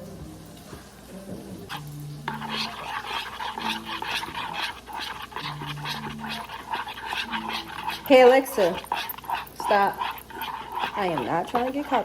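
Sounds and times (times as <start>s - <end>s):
spoon scraping a bowl: 1.7s - 12.0s.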